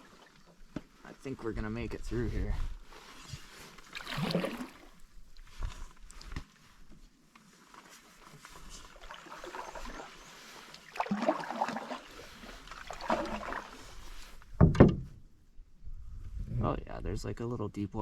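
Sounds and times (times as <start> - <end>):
paddle strokes in water: 2.6 - 14.5.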